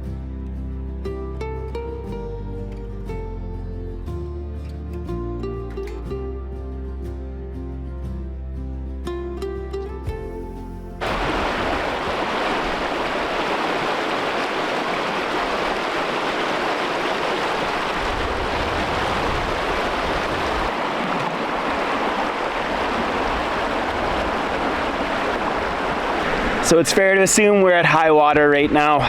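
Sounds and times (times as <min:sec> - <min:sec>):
plucked-string music: 0:00.0 - 0:11.1
creek water rushing: 0:11.0 - 0:29.0.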